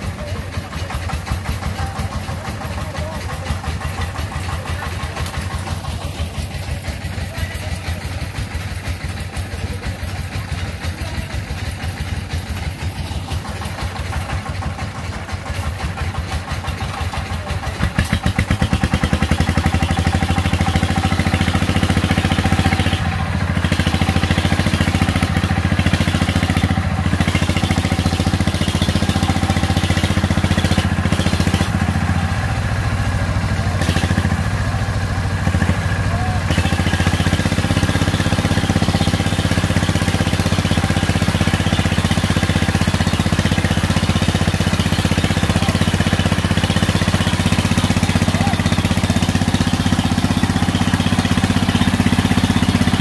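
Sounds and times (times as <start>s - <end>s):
diesel engine chugging: 0.0s - 53.0s.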